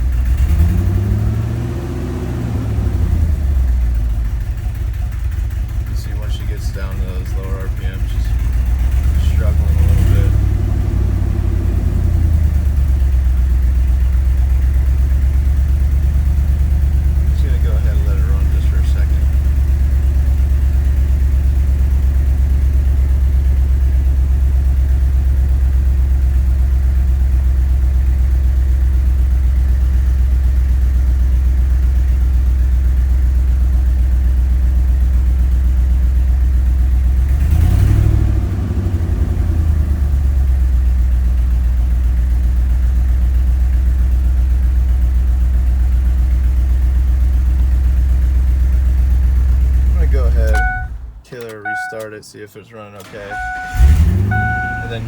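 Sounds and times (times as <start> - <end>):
truck engine idling: 0.0 - 37.3, 38.2 - 55.0
engine revving: 0.2 - 3.7, 6.0 - 12.9, 37.3 - 40.4, 53.0 - 55.0.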